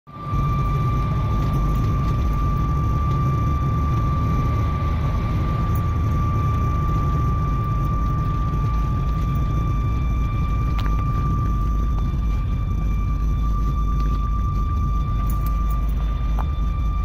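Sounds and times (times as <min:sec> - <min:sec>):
car road and engine rumble: 0:00.1 - 0:17.0.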